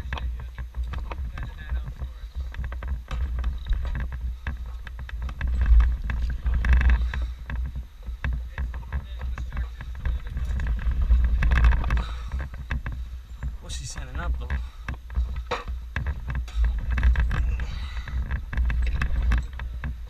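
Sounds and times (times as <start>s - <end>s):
knocks and clatter: 0.0s - 20.0s
wind buffeting microphone: 0.0s - 20.0s
scraping rushes of noise: 0.7s - 20.0s.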